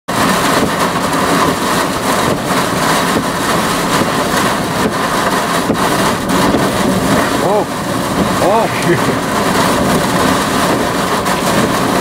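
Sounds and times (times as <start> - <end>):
strong wind rushing: 4.1 - 12.0.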